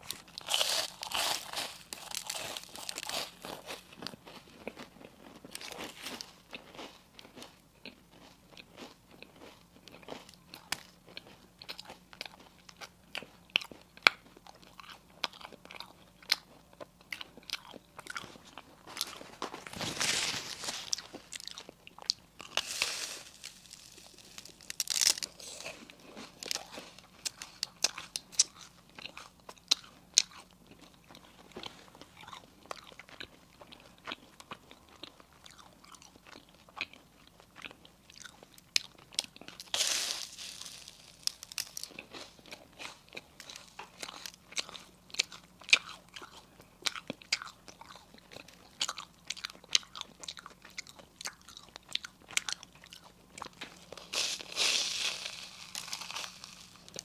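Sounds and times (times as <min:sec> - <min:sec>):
person chewing crisp pastry: 0:00.0 - 0:57.0.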